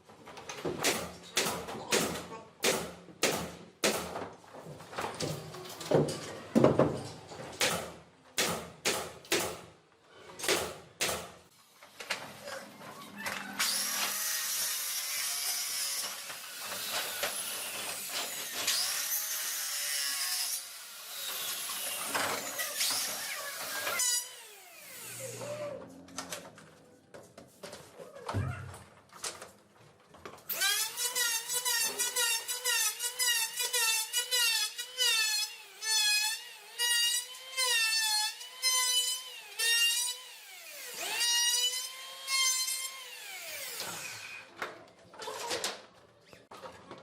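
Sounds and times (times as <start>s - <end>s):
power tool spinning up and down: 13.3s - 25.9s, 30.5s - 44.5s.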